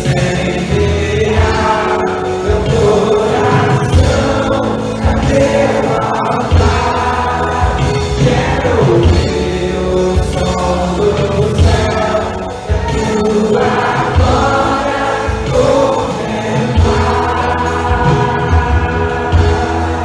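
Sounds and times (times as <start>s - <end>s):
gospel music with group singing: 0.0s - 20.0s
steady bass beat: 10.4s - 20.0s.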